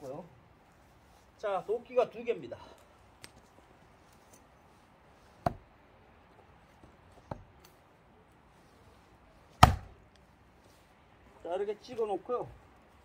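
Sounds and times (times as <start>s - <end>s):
axe striking a log: 5.4s - 5.6s, 9.6s - 10.0s.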